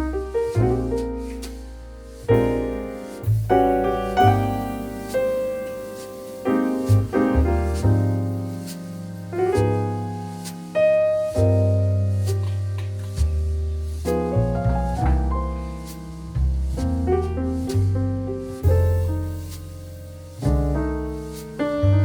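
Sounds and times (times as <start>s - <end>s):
soft piano music: 0.0s - 22.0s.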